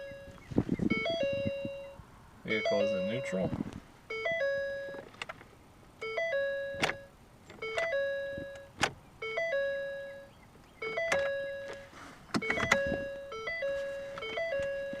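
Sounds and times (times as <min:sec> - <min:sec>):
car electronic warning chime: 0:00.0 - 0:05.0, 0:06.0 - 0:15.0.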